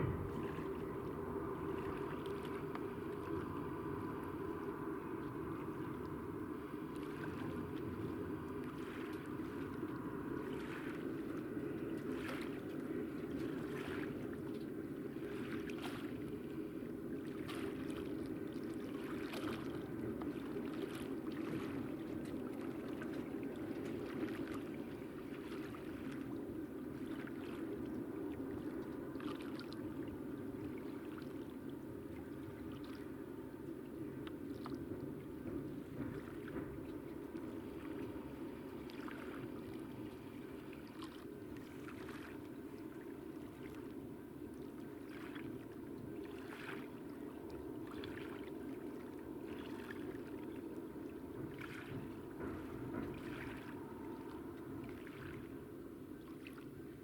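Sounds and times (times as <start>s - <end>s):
freight train rumbling over bridge: 0.0s - 1.8s.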